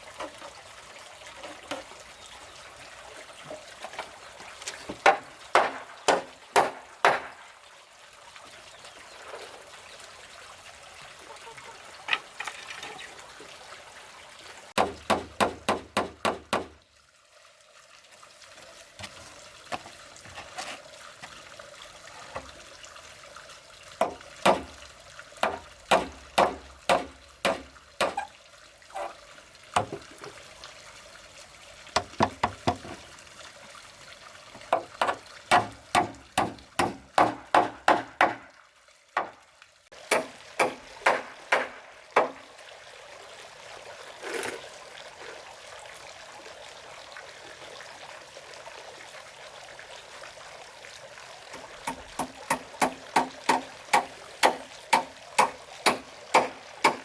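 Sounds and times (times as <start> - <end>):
running water: 0.0 - 57.0
tool knocking on wood: 14.8 - 16.8, 25.4 - 28.2, 32.0 - 33.0, 34.7 - 38.4.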